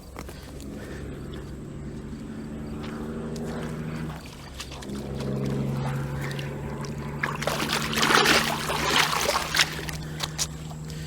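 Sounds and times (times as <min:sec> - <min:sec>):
motor humming: 0:00.0 - 0:11.0.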